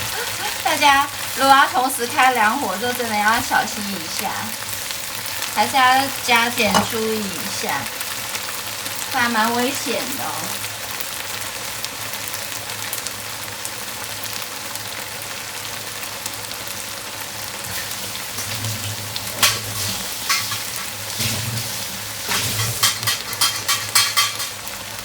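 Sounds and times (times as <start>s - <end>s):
food sizzling in a frying pan: 0.0s - 25.0s
spatula scraping a pan: 19.4s - 24.6s.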